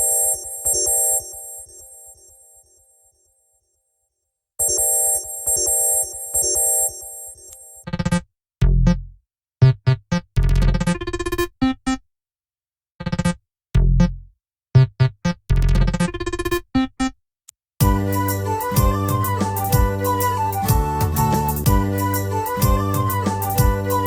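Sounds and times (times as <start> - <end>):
phone ringtone: 0.0 - 2.7, 4.6 - 8.2, 17.8 - 24.0
electronic keyboard melody with bass: 13.8 - 14.2, 17.8 - 24.0.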